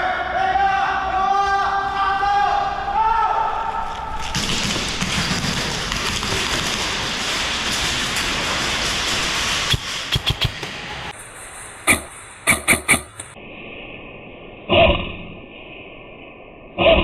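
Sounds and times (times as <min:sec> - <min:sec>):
sharp hits: 0:04.4 - 0:13.4.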